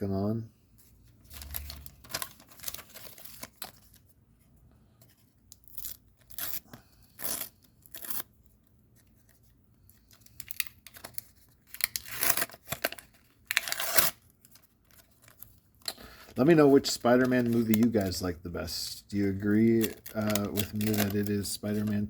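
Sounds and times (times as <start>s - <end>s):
paper rustling and tearing: 1.1s - 4.0s, 9.0s - 18.1s, 19.5s - 22.0s.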